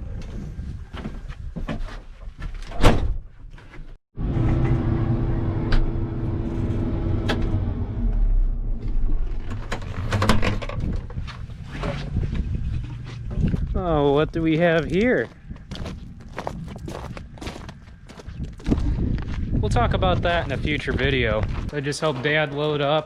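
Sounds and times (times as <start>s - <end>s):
vehicle engine rumbling: 4.2s - 22.6s.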